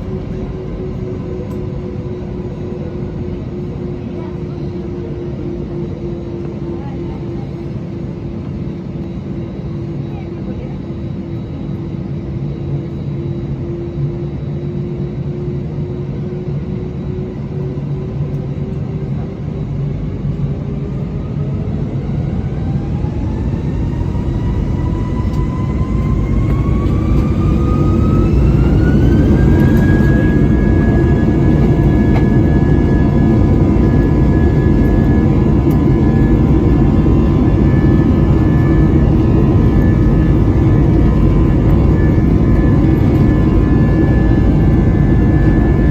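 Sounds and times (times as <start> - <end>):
jet engine whine: 0.0 - 45.9
engine roar: 16.8 - 45.9.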